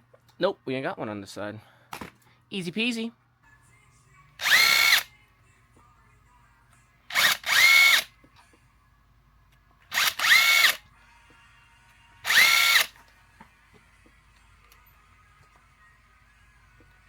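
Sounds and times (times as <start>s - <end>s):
cordless power tool whine: 4.4s - 5.0s, 7.1s - 8.0s, 10.0s - 10.8s, 12.3s - 12.9s.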